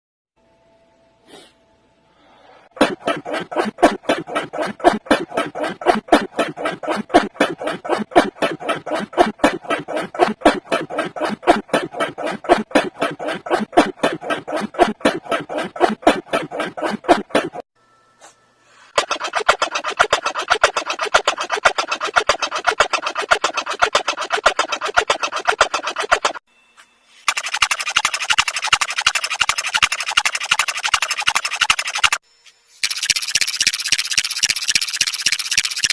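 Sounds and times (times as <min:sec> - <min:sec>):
person sneezing: 0:01.3 - 0:01.6.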